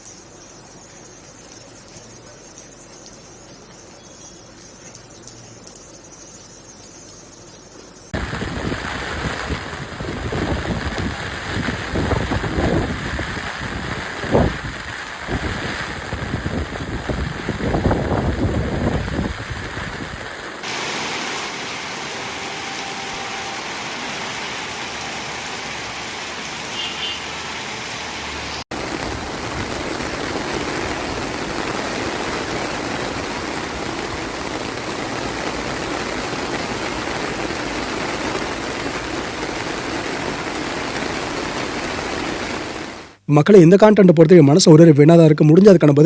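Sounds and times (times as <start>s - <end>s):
wind rumble on microphone: 8.2s - 20.4s
heavy rain: 8.2s - 43.2s.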